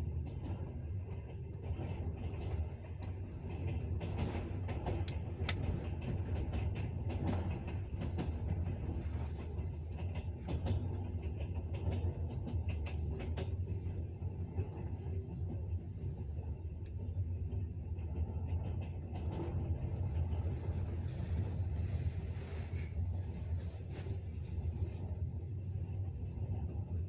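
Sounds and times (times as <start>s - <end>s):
steady low rumble: 0.0s - 27.0s
train wheels clattering on rails: 1.6s - 15.7s.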